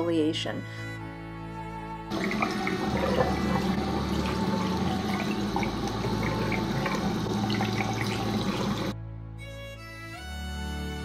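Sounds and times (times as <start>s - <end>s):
tap water running into sink: 2.1s - 8.9s.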